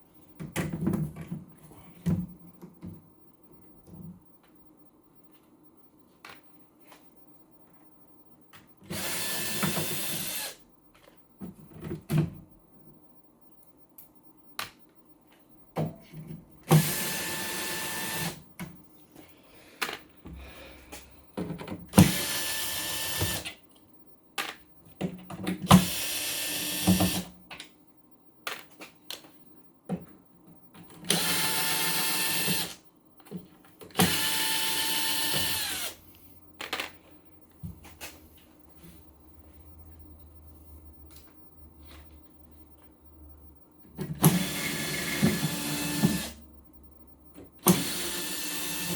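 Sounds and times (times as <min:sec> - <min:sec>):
electric drill whine: 0:08.9 - 0:10.6, 0:16.7 - 0:18.4, 0:22.0 - 0:23.5, 0:25.8 - 0:27.2, 0:31.1 - 0:32.8, 0:34.0 - 0:36.0, 0:44.3 - 0:46.3, 0:47.7 - 0:48.9.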